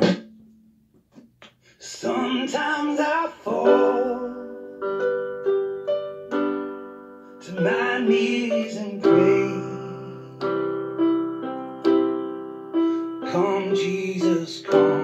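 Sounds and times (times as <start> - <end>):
piano chords: 0.0 - 0.7, 2.1 - 15.0
person singing: 1.8 - 4.8, 7.4 - 10.8, 13.0 - 15.0.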